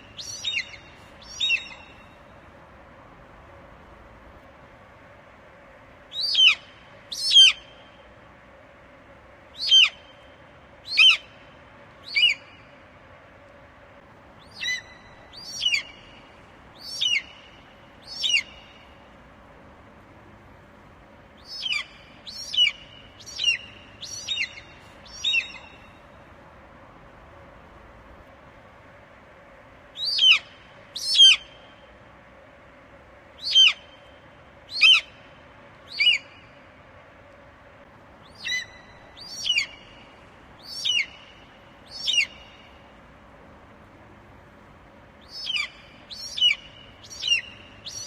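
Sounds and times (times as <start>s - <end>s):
eagle calling: 0.1s - 2.0s, 14.4s - 16.2s, 16.8s - 17.4s, 18.1s - 18.7s, 21.4s - 25.9s, 33.4s - 34.0s, 34.7s - 35.2s, 35.9s - 36.4s, 38.2s - 41.3s, 41.9s - 42.6s, 45.2s - 48.0s.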